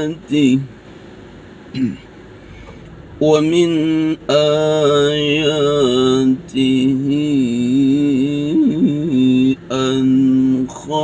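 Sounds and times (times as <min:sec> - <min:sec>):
man reciting melodically: 0:00.0 - 0:00.8, 0:03.1 - 0:11.0.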